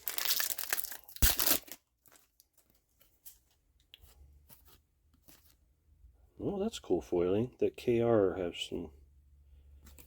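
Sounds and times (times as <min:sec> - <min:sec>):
foil wrapper tearing and crinkling: 0:00.0 - 0:02.6.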